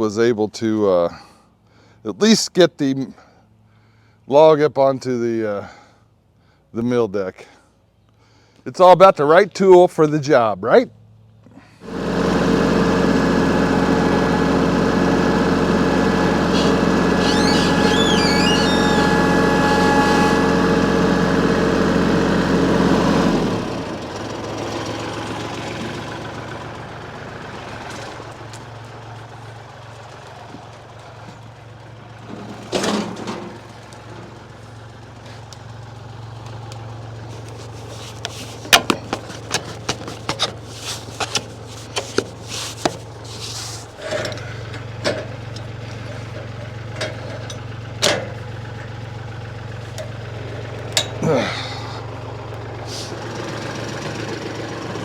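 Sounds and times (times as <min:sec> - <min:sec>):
tractor diesel engine: 0:11.8 - 0:55.0.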